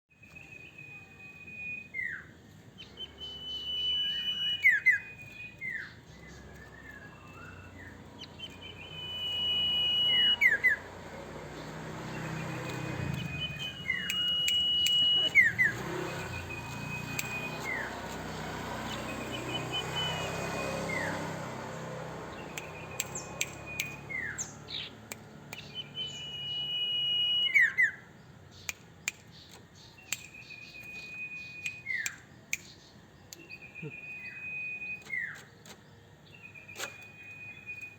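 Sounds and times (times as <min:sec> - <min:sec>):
bird whistling: 0:00.1 - 0:21.4, 0:22.3 - 0:24.9, 0:25.5 - 0:28.6, 0:29.3 - 0:35.6, 0:36.2 - 0:37.9
sharp clicks: 0:12.4 - 0:18.3, 0:22.3 - 0:25.9, 0:28.5 - 0:33.4.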